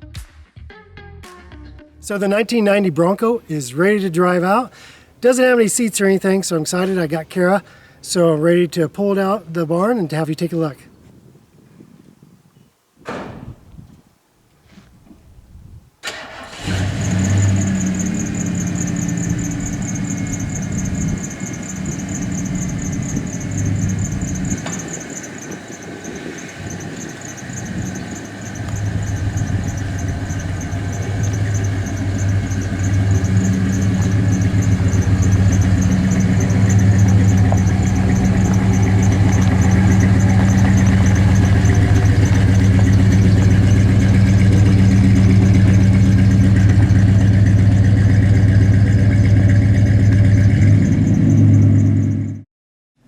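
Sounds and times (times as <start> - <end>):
car engine starting and idling: 16.0 - 52.4
high pulsing whine: 17.4 - 49.6.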